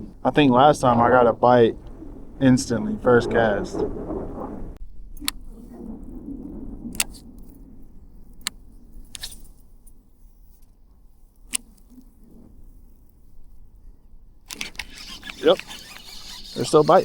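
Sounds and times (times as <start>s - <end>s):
wind on microphone: 0.0s - 17.0s
fishing reel clicks: 14.5s - 17.0s.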